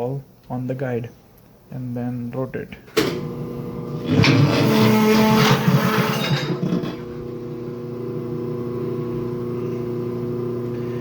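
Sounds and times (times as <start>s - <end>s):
turntable motor humming: 3.2s - 11.0s.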